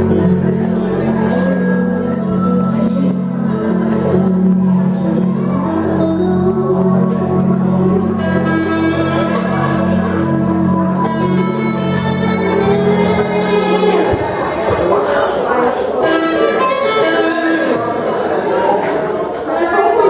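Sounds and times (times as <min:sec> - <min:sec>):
electric guitar: 0:00.0 - 0:14.8, 0:16.0 - 0:18.2
sustained chords: 0:00.0 - 0:14.8.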